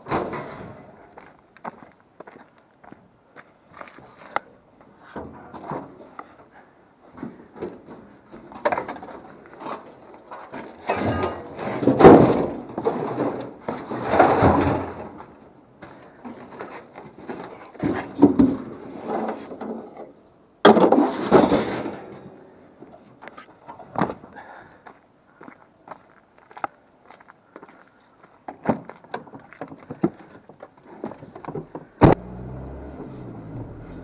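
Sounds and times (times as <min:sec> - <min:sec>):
scrap metal knocks and clatters: 0:07.1 - 0:15.4, 0:20.7 - 0:22.3
loud bangs and scrapes: 0:07.3 - 0:15.4, 0:20.6 - 0:22.4.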